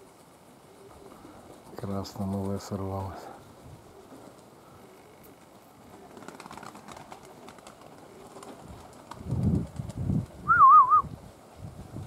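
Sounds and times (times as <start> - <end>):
wind gusts hitting microphone: 8.5 - 12.0
high warbling whistle: 10.5 - 11.1.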